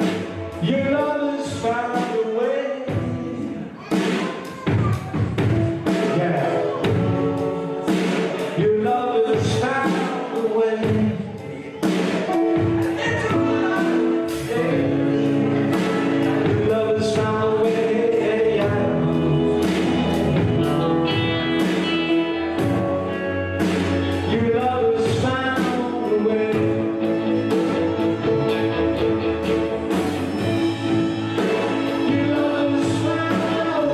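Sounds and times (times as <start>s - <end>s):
instrumental backing: 0.0s - 33.9s
drum hits: 2.9s - 10.2s
gospel singing: 5.6s - 33.9s.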